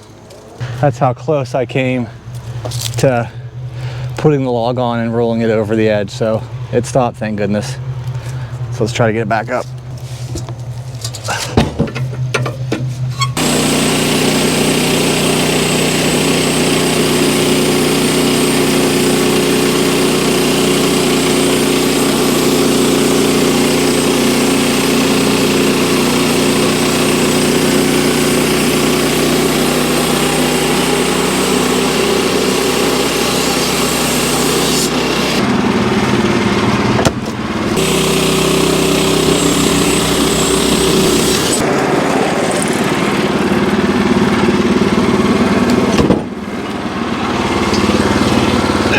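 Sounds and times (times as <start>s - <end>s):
loud engine running: 1.6s - 48.9s.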